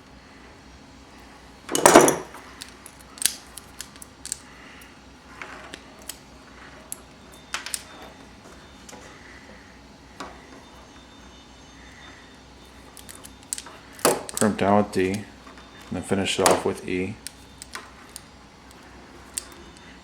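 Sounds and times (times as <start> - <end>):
wire strippers clicking and snipping: 1.8 - 4.9, 12.9 - 20.0.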